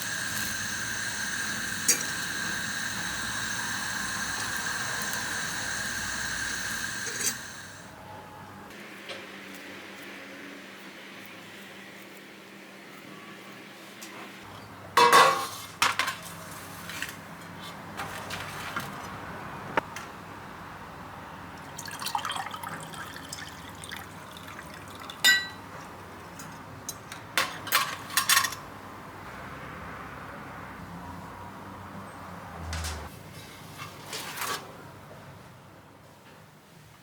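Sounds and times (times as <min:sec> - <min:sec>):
liquid pouring into glass: 0:21.6 - 0:25.6
glassware clinking: 0:21.7 - 0:25.7.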